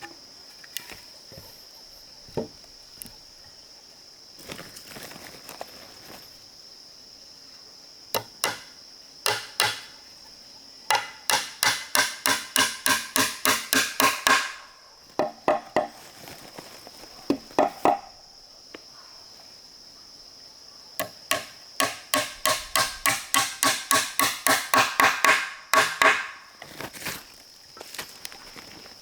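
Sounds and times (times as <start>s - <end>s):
high insect drone: 0.0s - 29.0s
hand tool striking wood: 8.1s - 10.0s, 10.9s - 16.1s, 17.3s - 18.2s, 21.0s - 26.5s.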